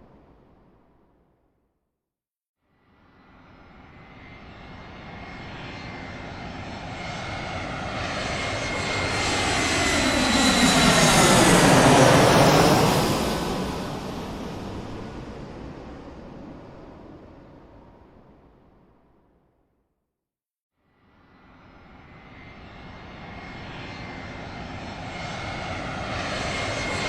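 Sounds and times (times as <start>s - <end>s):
airplane flying over: 3.0s - 18.6s, 21.3s - 27.0s.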